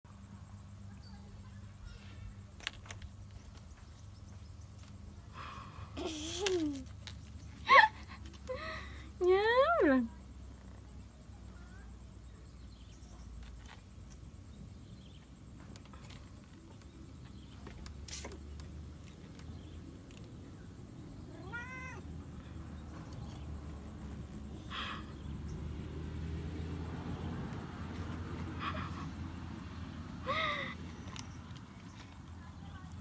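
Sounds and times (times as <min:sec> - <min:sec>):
cat meowing: 0:21.3 - 0:22.1.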